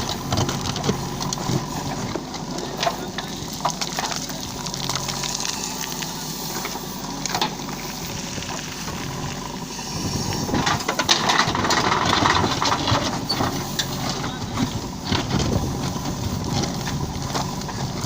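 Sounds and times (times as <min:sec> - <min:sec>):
diesel engine running: 0:00.0 - 0:18.0
knocks and clatter: 0:10.6 - 0:18.0.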